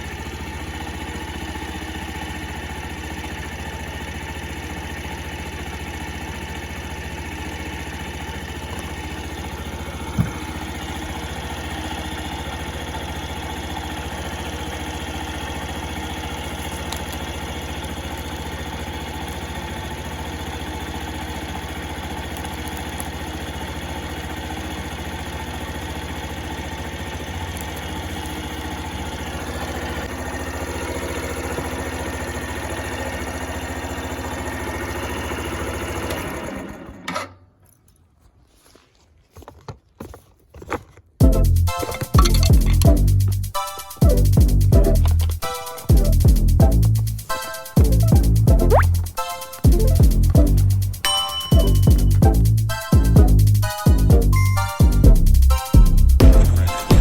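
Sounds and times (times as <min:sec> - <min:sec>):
motorcycle engine idling: 0:00.0 - 0:37.1, 0:41.2 - 0:57.0.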